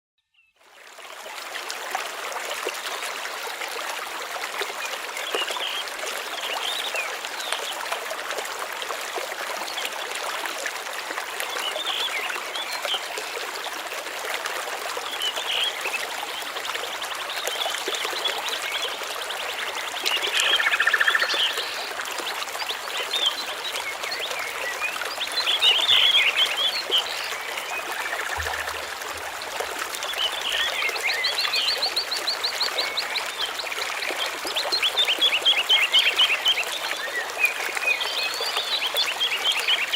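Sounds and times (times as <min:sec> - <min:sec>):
stream rushing: 0:06.9 - 0:37.9
small birds chirping: 0:16.8 - 0:21.9, 0:22.6 - 0:33.8.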